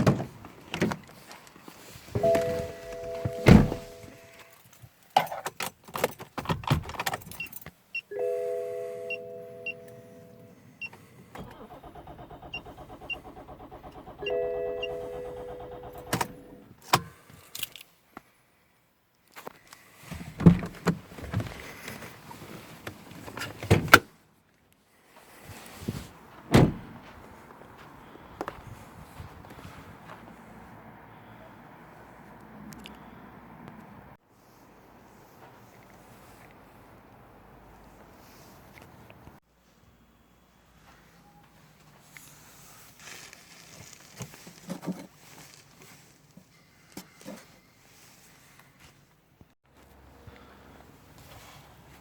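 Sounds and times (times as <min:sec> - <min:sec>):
car warning gong chiming: 0:02.2 - 0:04.4, 0:08.1 - 0:10.5, 0:14.2 - 0:16.6.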